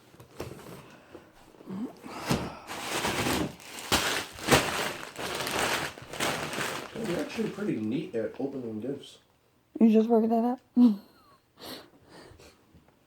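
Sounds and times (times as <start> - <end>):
wrapping paper ripping: 2.7 - 8.2
wrapping paper rustling: 2.7 - 8.6.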